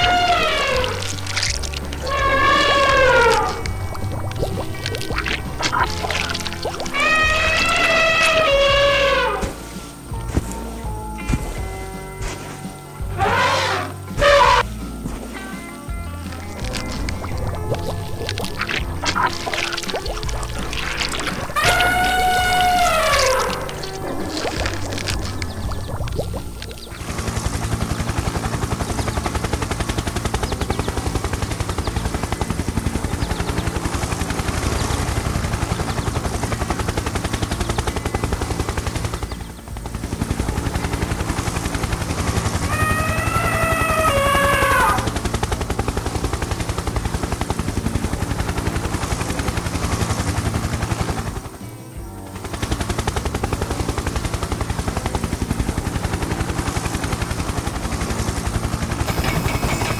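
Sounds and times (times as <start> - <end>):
rapid mechanical rattle: 26.8 - 42.6
short falling pitched call: 42.6 - 45.1.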